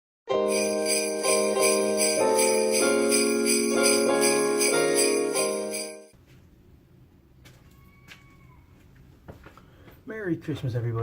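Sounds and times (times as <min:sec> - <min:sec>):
sleigh bells over a simple tune: 0:00.4 - 0:06.2.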